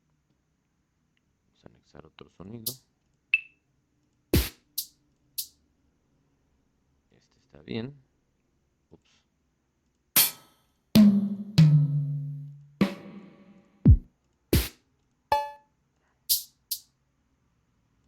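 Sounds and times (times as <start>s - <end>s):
ringing tom strikes: 11.0s - 14.0s
deep kick drum: 13.9s - 14.7s.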